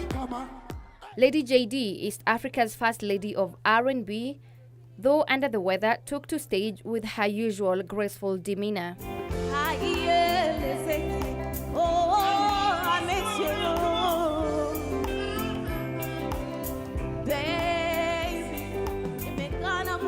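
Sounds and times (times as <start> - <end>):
woman singing with vibrato: 0.0 - 1.3, 9.4 - 20.0.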